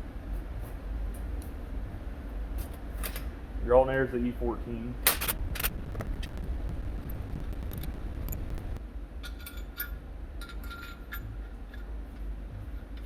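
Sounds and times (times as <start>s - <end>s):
metal tools clicking: 5.1s - 5.7s.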